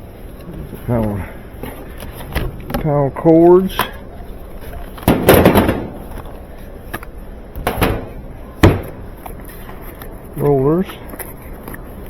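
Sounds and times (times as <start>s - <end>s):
objects knocking and clattering: 5.0s - 6.3s
loud thump with rattle: 5.1s - 6.0s, 7.6s - 9.0s.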